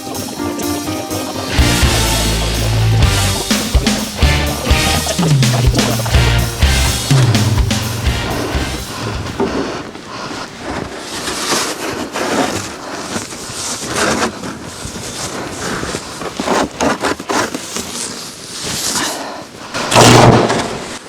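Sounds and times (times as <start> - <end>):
loud burst with low buzz: 1.5 - 9.4
snow shovel scraping snow: 1.5 - 20.0.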